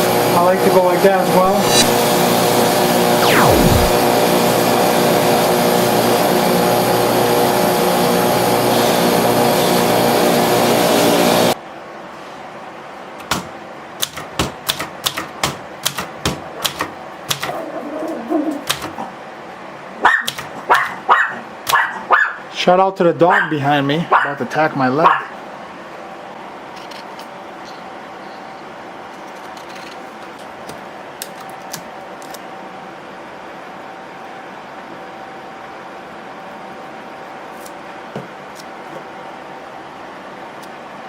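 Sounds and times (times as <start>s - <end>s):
electric grinder grinding knife: 1.5s - 2.1s
dog barking: 20.0s - 22.4s, 23.3s - 23.5s, 24.1s - 24.4s, 25.0s - 25.3s.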